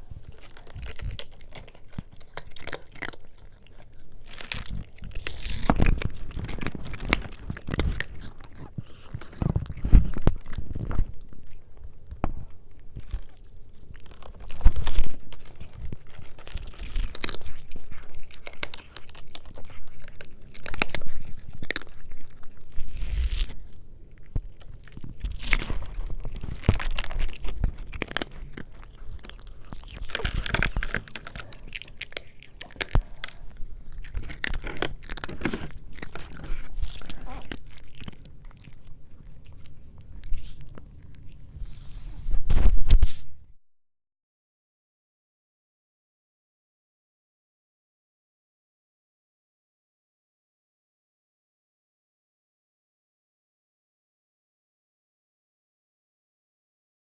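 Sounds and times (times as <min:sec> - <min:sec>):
cat chewing food: 0:00.0 - 0:41.6.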